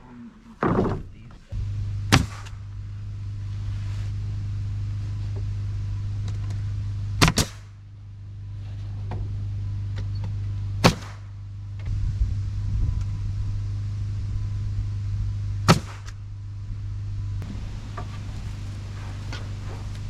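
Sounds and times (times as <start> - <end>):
low motor hum: 0.0 - 20.0
sharp impacts: 0.6 - 3.5, 7.2 - 7.8, 10.8 - 11.4, 15.6 - 16.3.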